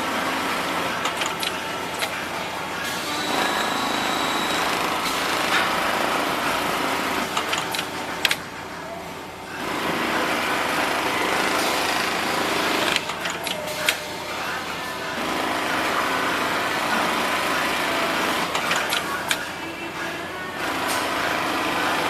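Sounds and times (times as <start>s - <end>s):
sewing machine stitching: 0.0s - 8.5s, 9.6s - 14.0s, 15.2s - 19.5s
sharp clicks: 1.0s - 2.2s, 7.2s - 8.4s.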